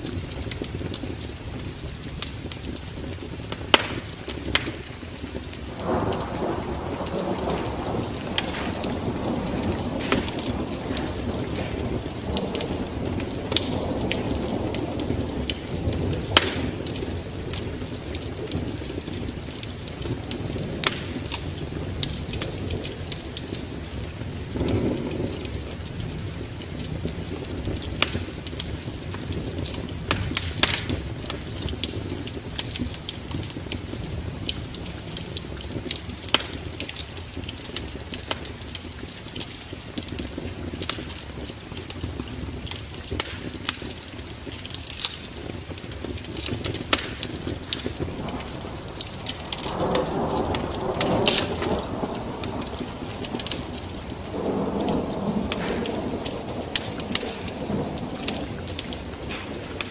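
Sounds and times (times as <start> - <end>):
fire crackling and popping: 0.0 - 59.9
fire flames rushing: 0.0 - 59.9.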